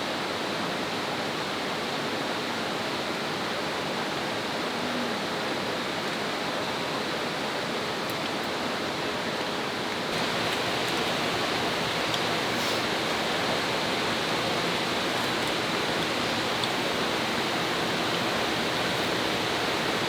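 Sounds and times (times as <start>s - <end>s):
stream rushing: 10.1s - 20.0s.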